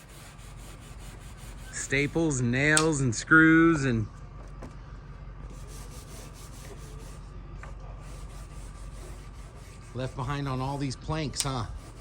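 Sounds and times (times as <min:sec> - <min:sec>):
metal tool scraping wood: 0:08.1 - 0:12.0.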